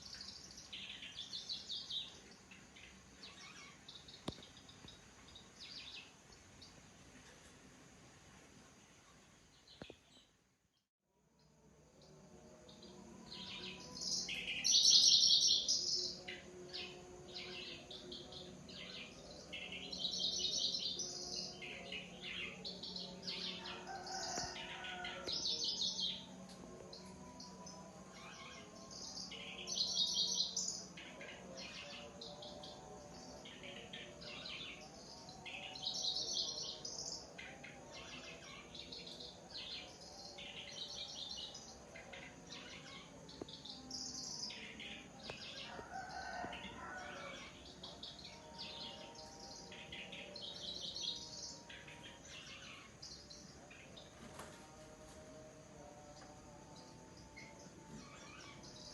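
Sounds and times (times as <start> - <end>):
faint low hum: 0.0 - 10.7.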